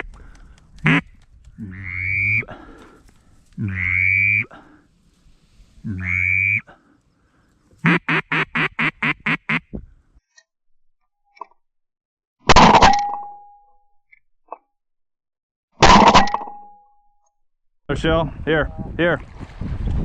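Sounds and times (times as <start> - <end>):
duck quacking: 0.8 - 2.5, 3.6 - 4.5, 5.9 - 6.6, 7.8 - 9.7.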